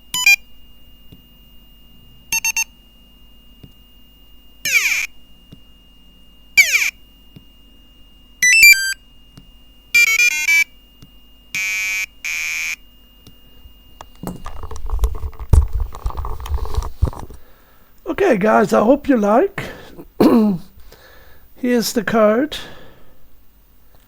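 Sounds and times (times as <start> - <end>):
piezo buzzer tone effects: 0.0 - 17.9.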